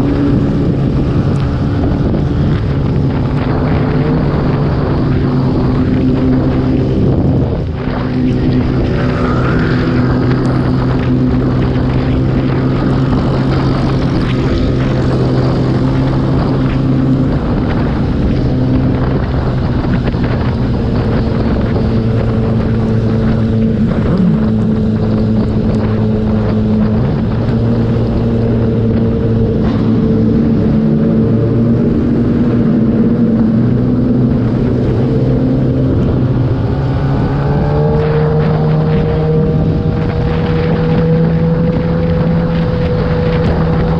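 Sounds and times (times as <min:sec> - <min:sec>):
motorcycle engine running: 0:00.0 - 0:43.9
wind noise: 0:00.0 - 0:43.9.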